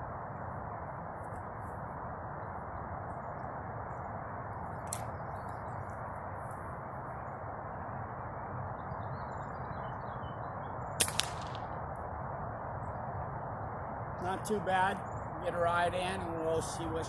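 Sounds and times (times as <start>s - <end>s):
air rifle shot crack: 11.0s - 11.8s
quieter crack: 11.0s - 11.8s.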